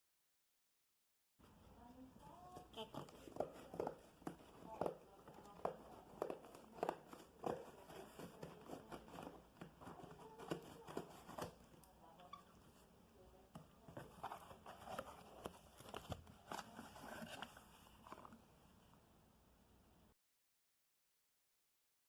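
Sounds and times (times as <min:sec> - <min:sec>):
packaging rustling and crinkling: 0:14.0 - 0:18.4.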